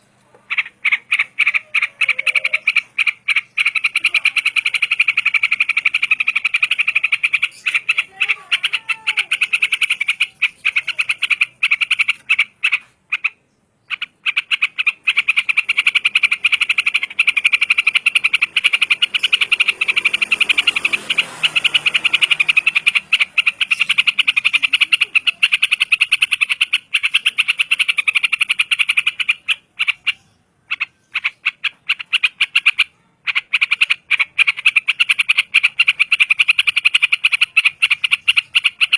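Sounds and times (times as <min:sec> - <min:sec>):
animal rattling trill of clicks: 0:14.0 - 0:30.0, 0:30.8 - 0:38.9.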